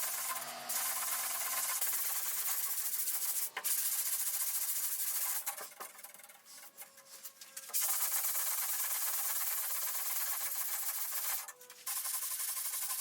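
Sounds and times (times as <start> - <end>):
sanding scratchy hiss: 0.0 - 13.0.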